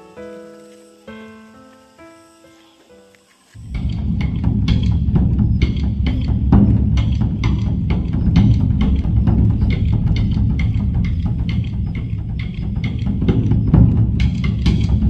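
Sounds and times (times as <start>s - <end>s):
drum beat: 3.6s - 15.0s
heavy bass: 3.6s - 15.0s.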